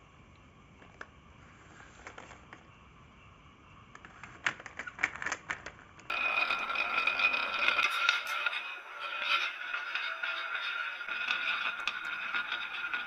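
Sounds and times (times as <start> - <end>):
loud steady ringing tone: 6.1 - 13.0.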